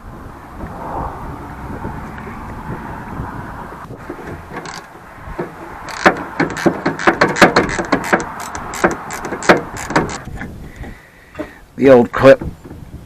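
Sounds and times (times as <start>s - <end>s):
sharp clicks and taps: 4.6s - 11.5s.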